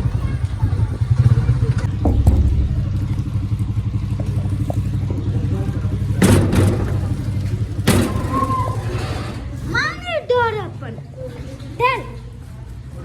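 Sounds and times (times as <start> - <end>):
engine running with pulsing rumble: 0.0 - 9.6.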